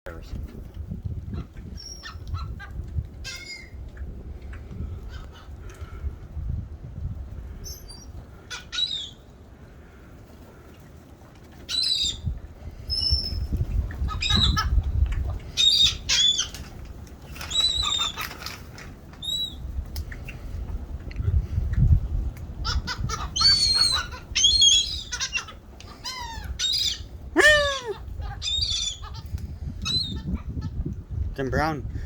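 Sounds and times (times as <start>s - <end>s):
birds giving short high calls: 17.4s - 18.4s, 22.6s - 29.2s.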